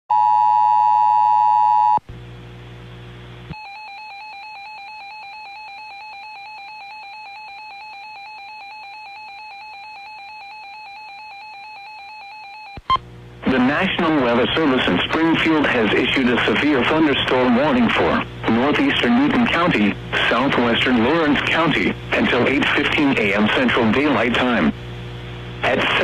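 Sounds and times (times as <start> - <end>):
low electronic buzz: 1.7 - 3.6, 12.9 - 26.0.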